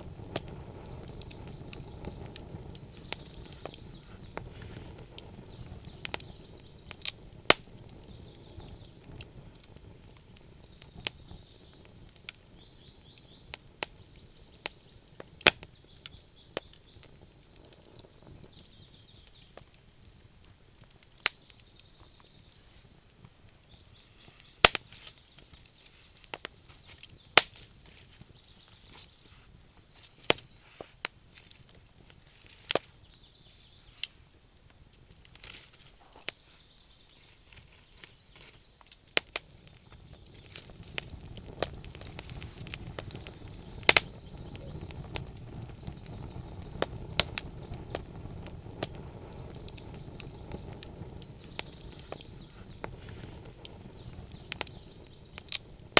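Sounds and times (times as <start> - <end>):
burning logs popping: 0.0 - 55.9
wood fire crackling: 0.0 - 55.9
faint bird chirps: 10.0 - 17.4, 18.0 - 19.6, 20.5 - 27.4, 32.7 - 34.6, 36.0 - 38.9, 39.9 - 40.6, 43.1 - 48.5, 49.6 - 55.5.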